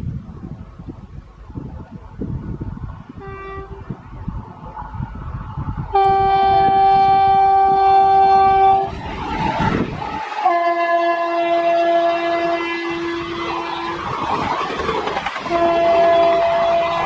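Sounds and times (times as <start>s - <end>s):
train rushing past: 2.1s - 17.0s
train horn blast: 3.2s - 4.0s, 5.9s - 8.9s, 10.4s - 13.9s, 15.4s - 17.0s.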